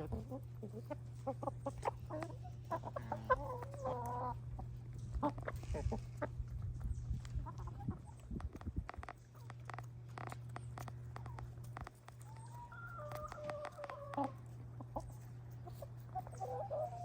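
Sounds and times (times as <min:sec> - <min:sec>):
hen contented call: 0:00.0 - 0:04.6, 0:11.1 - 0:17.0
hens pecking at food: 0:00.0 - 0:17.0
steady low hum: 0:00.0 - 0:17.0.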